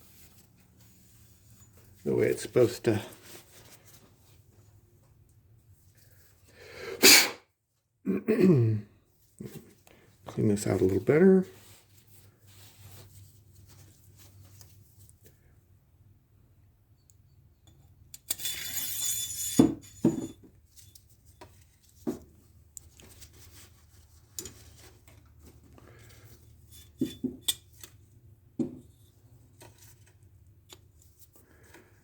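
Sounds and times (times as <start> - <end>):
short hiss: 7.0 - 7.4
steel parts clinking: 17.7 - 21.0.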